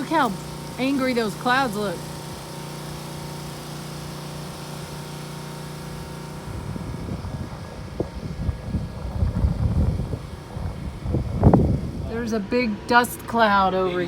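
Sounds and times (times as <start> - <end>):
engine-like hum: 0.0 - 14.0
wind buffeting microphone: 6.0 - 13.0.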